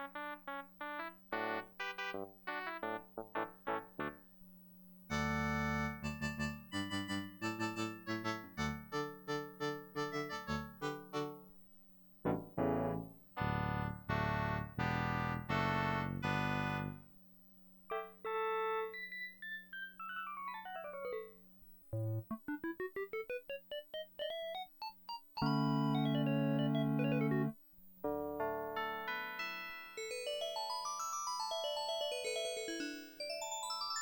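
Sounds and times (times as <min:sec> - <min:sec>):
keyboard playing chords and melody: 0:05.1 - 0:11.5, 0:12.3 - 0:17.0, 0:17.9 - 0:30.7.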